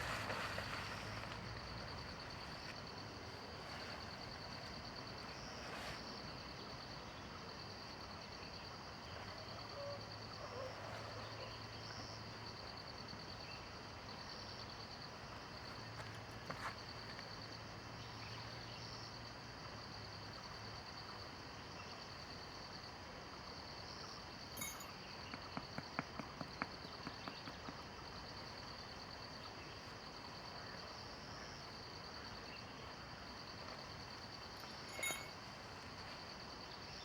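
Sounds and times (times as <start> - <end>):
soft background hiss: 0.0 - 25.3
insects trilling: 0.0 - 37.0.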